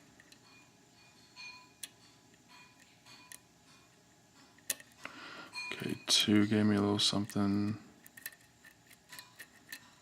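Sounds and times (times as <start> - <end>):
lock pick clicking and scraping: 8.0 - 10.0.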